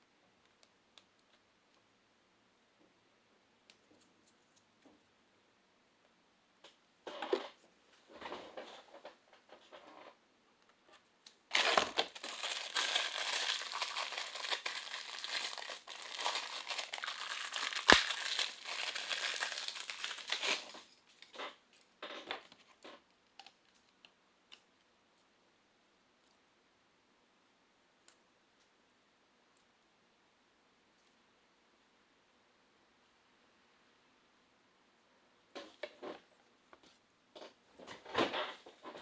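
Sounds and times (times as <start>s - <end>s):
plastic packaging crinkling: 11.5s - 21.6s.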